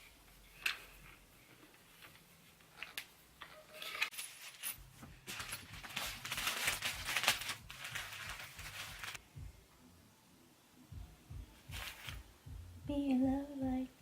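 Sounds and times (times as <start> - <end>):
plastic bag crinkling: 3.8 - 9.2.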